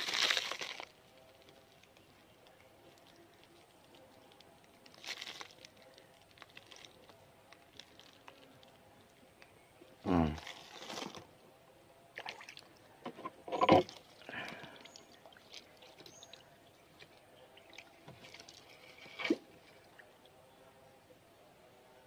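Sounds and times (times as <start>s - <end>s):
water splashes and drips: 12.2s - 12.9s, 13.8s - 20.4s.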